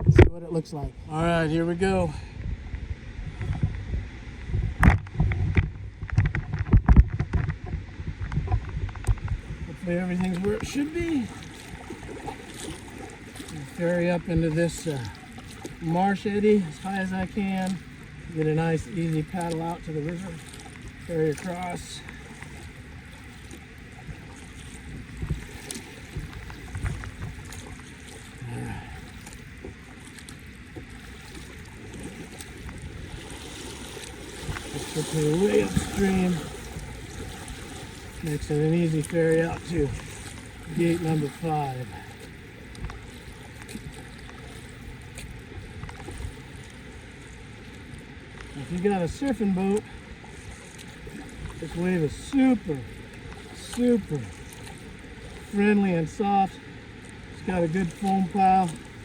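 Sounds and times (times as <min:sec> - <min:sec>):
wind on microphone: 0:00.0 - 0:13.2, 0:24.0 - 0:29.8, 0:30.8 - 0:42.1
low rumble of handling noise: 0:00.0 - 0:59.0
paddle strokes splashing in water: 0:00.0 - 0:59.0
low knocks and thin clicks: 0:03.4 - 0:09.4.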